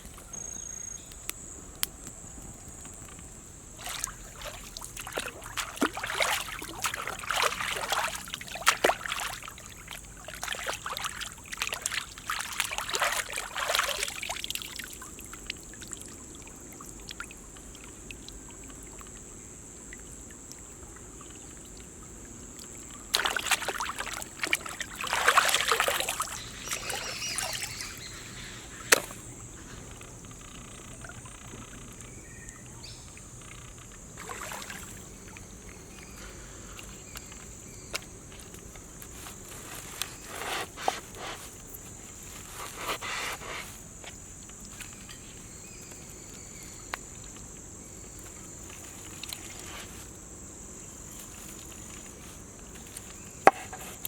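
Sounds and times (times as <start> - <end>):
high insect drone: 0.0 - 54.0
rustling and handling noise: 35.7 - 46.4, 48.0 - 50.3, 50.9 - 54.0.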